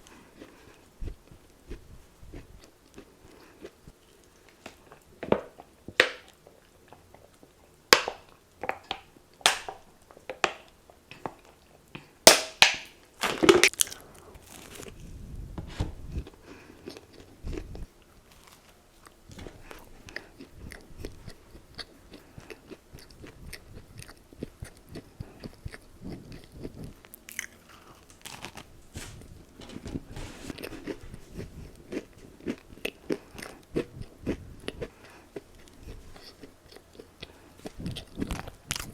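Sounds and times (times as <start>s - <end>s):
crunchy food crunches: 13.2s - 15.1s, 16.2s - 29.3s, 30.5s - 38.9s
chewing: 16.2s - 29.3s, 30.5s - 38.9s.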